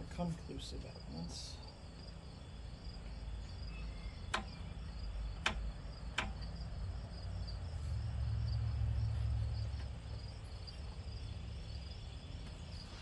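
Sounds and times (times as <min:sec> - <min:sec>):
crickets chirping: 0:00.0 - 0:13.0
low rumble: 0:03.5 - 0:12.8
sharp clicks: 0:04.3 - 0:04.6, 0:05.4 - 0:06.6.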